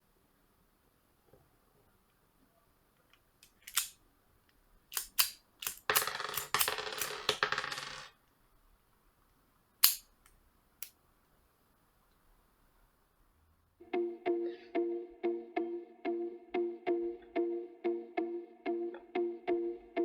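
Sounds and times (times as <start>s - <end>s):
small metal parts clinking: 3.4s - 3.9s, 5.0s - 8.1s, 9.8s - 10.1s
toy pistol clicking: 3.4s - 4.0s, 4.9s - 7.4s, 9.8s - 10.4s.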